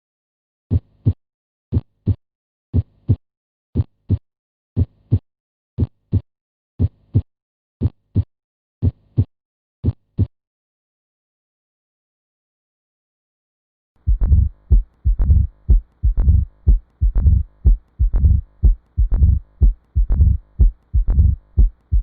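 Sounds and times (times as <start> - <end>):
heartbeat: 14.0 - 22.0.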